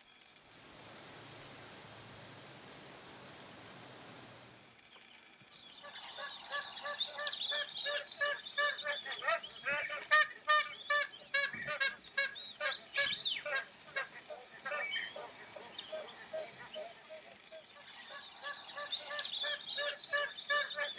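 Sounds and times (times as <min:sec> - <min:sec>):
geese honking: 0:05.8 - 0:20.9.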